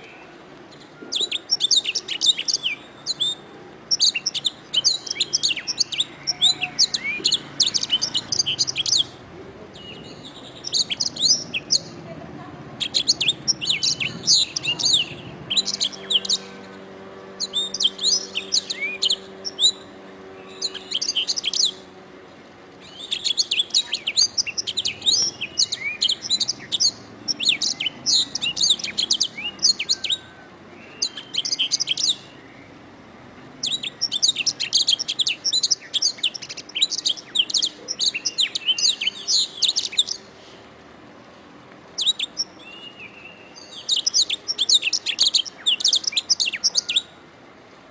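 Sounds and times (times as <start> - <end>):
canary singing trills and chirps: 0.0 - 22.2, 22.8 - 32.9, 33.5 - 40.3, 42.0 - 47.2.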